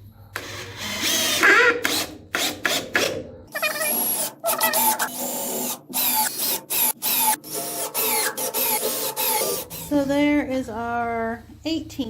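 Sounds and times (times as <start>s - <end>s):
power drill driving screws: 0.4s - 3.1s, 3.7s - 9.9s.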